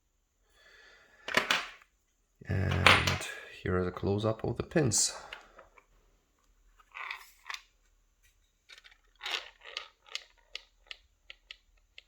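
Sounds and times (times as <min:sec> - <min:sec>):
lock parts clicking and scraping: 0:02.6 - 0:03.4, 0:08.7 - 0:12.0.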